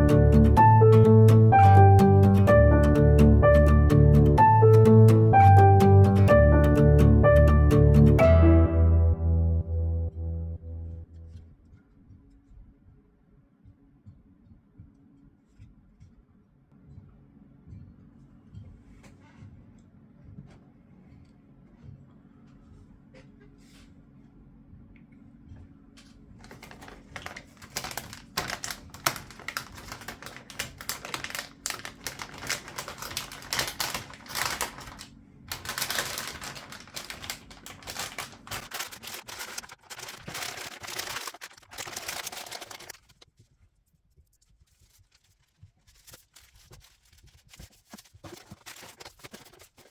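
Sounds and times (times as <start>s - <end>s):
low steady hum: 8.4s - 11.7s
clatter of small clicks and rustles: 26.4s - 43.3s.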